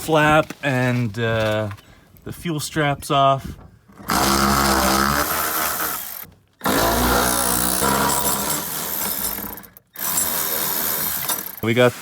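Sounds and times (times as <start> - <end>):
handheld power tool running: 4.0 - 11.7.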